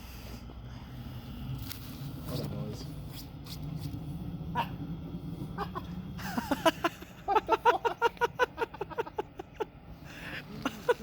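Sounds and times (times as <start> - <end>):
wood stove hum: 0.0 - 11.0
rapid cackling laughter: 5.6 - 9.7.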